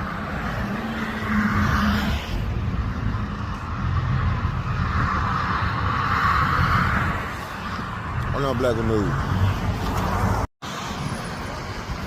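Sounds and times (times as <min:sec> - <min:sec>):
vehicle engines rumbling: 0:00.0 - 0:12.0
hiss of traffic: 0:10.6 - 0:12.0.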